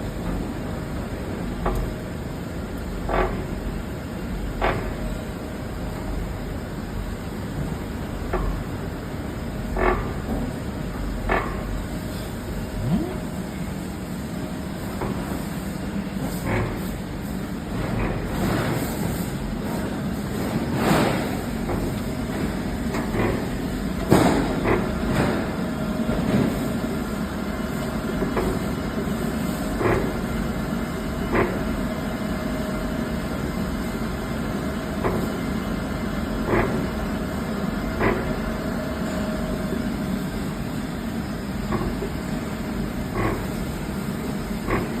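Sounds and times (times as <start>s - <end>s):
tumbler humming: 12.8s - 13.5s.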